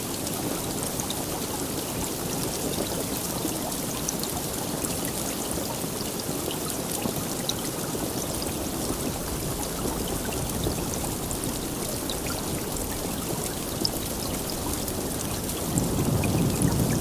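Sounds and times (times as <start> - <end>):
heavy rain falling: 0.0 - 17.0
low thunder rumble: 8.9 - 17.0.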